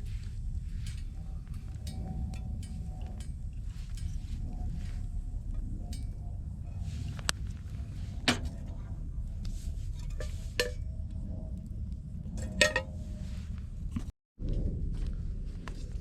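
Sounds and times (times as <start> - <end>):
steady low rumble: 0.0 - 16.0
metal cookware clinking: 10.0 - 10.8, 12.4 - 12.9.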